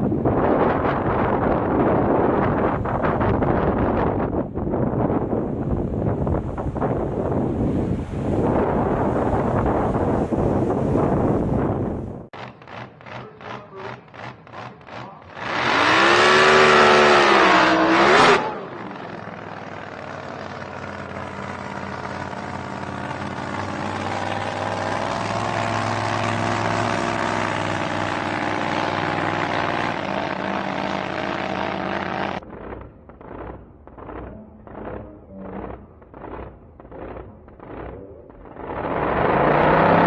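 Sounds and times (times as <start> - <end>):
boat engine revving: 12.3 - 40.0
quick pulsing: 32.4 - 40.0.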